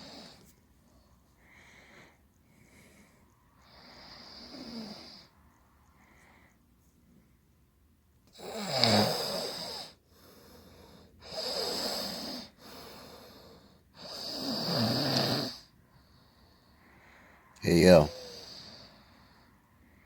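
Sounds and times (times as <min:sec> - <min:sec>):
soft breaths out: 0:00.0 - 0:06.8.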